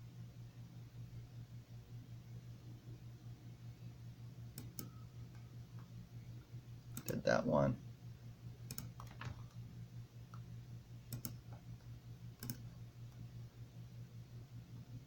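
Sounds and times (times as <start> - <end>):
steady low hum: 0.0 - 15.0
computer mouse clicks: 4.6 - 5.4, 6.9 - 7.2, 8.7 - 9.6, 11.1 - 11.6, 12.4 - 13.2.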